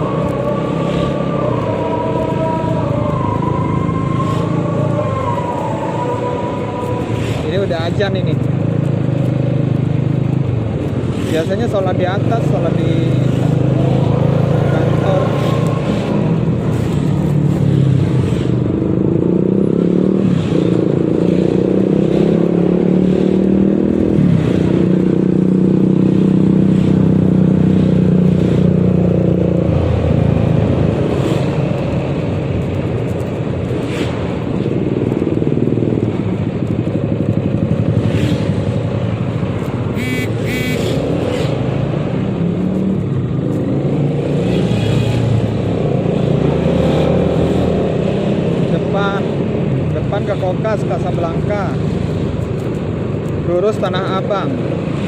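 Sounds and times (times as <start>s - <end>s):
scooter engine running: 39.7s - 41.3s.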